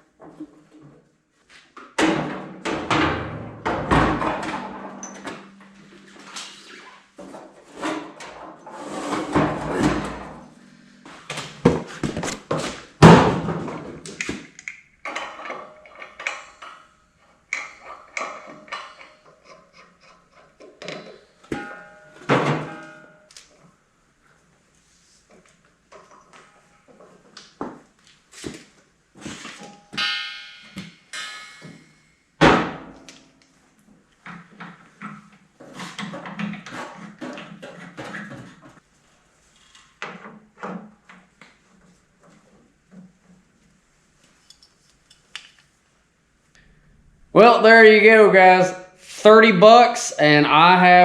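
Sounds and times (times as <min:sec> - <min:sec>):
ringing metallic knocks: 0:02.9 - 0:06.9, 0:29.7 - 0:32.1
metal clanks and scrapes: 0:02.9 - 0:12.9, 0:15.1 - 0:23.4, 0:34.3 - 0:38.8.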